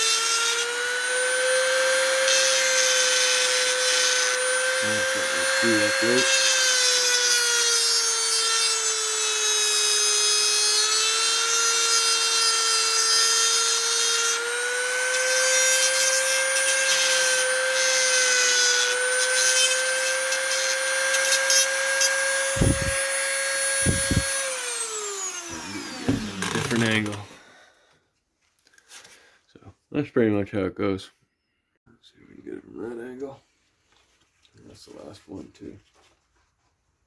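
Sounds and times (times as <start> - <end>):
rotary tool grinding metal: 0.0 - 27.4.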